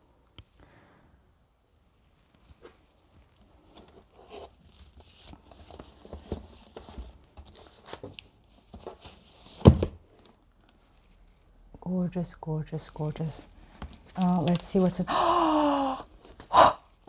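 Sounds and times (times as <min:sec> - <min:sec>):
rustling and scraping of packaging: 0:02.2 - 0:11.5.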